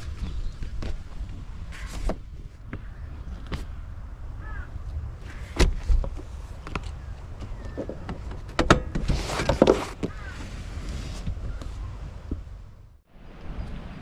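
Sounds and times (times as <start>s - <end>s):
rustling scrape: 9.0s - 11.8s.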